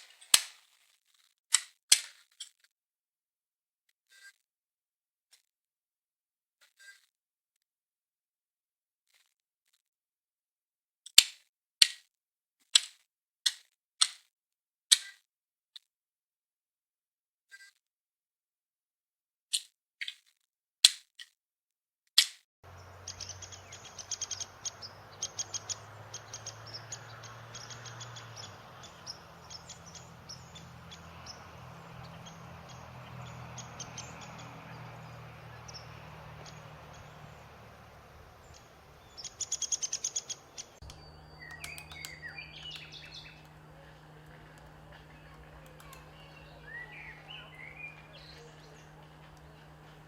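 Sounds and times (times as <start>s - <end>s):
faint bird calls: 22.7s - 50.0s
woodpecker tapping wood: 22.7s - 50.0s.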